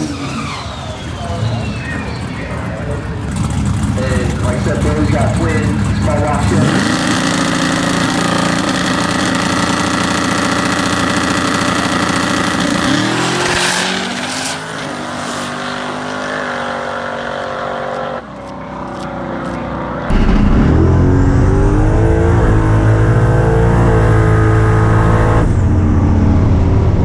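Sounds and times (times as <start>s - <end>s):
drag car engine revving: 0.0s - 27.0s
hiss rush: 13.8s - 17.0s.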